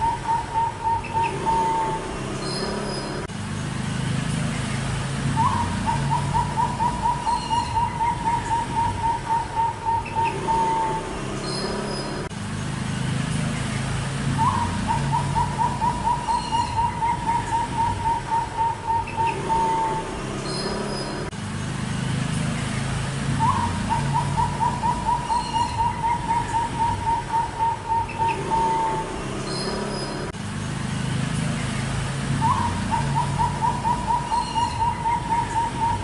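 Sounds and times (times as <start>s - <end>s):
dove cooing: 0.0s - 2.1s, 5.3s - 11.0s, 14.4s - 20.0s, 23.4s - 29.0s, 32.4s - 36.0s.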